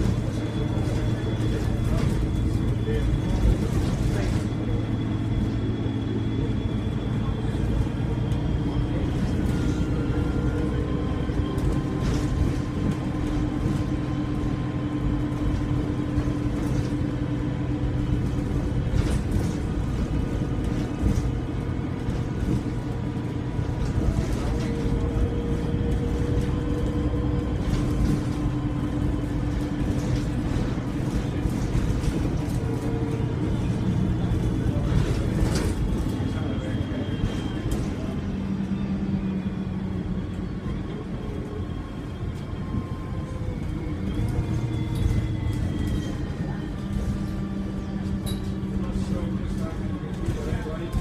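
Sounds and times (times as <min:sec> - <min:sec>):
diesel bus engine rumbling: 0:00.0 - 0:51.0.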